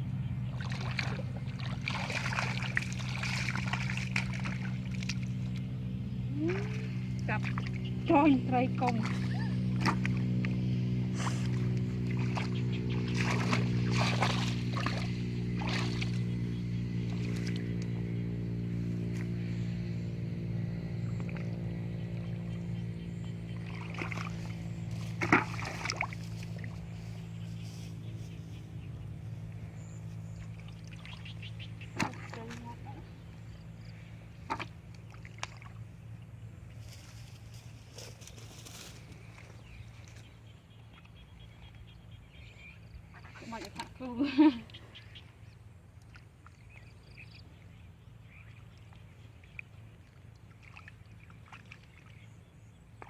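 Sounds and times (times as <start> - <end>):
small boat engine running: 0.0 - 53.0
sharp knocks or splashes: 0.6 - 5.3, 11.4 - 16.3, 23.6 - 26.7, 31.8 - 32.8, 34.4 - 35.8.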